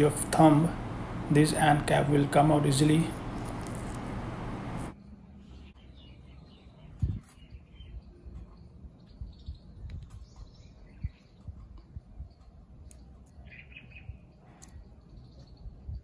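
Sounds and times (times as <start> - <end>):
faint birds chirping: 0.0 - 16.0.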